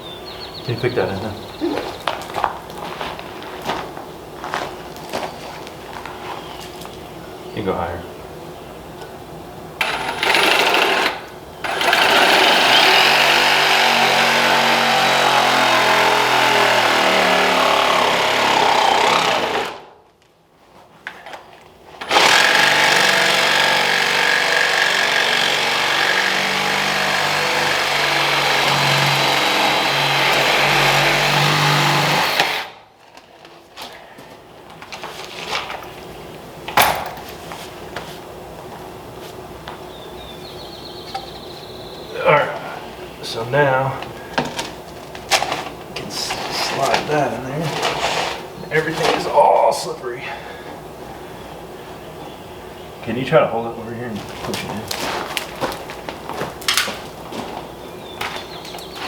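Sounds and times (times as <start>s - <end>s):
power saw cutting plastic pipe: 9.8s - 19.9s, 22.0s - 32.8s.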